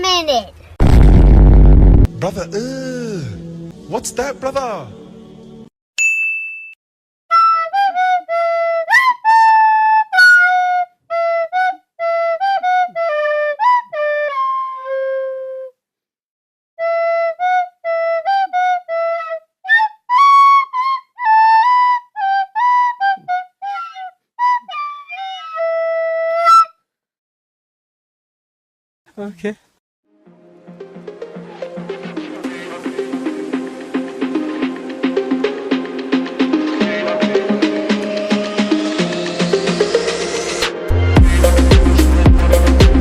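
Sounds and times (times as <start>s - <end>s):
flute-like solo melody: 7.3s - 15.7s, 16.8s - 26.8s.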